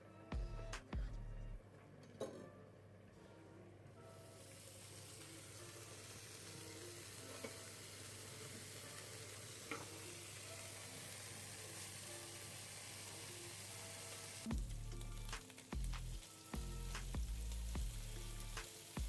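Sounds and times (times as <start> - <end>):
bacon sizzling in a pan: 4.2 - 19.0.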